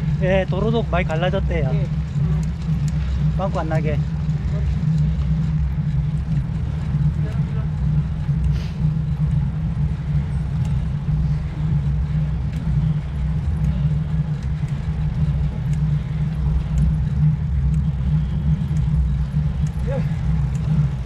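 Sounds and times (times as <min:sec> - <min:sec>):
bicycle road noise: 0:00.0 - 0:21.0.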